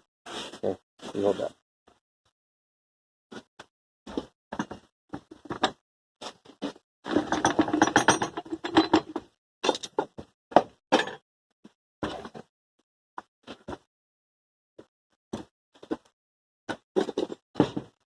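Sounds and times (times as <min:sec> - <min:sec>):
metal parts clinking and knocking: 0:07.1 - 0:10.1.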